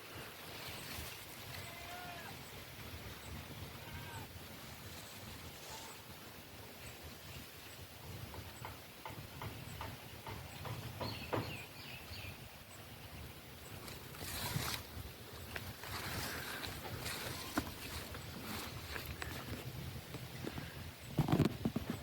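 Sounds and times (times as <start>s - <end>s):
footsteps outdoors: 13.8s - 22.0s.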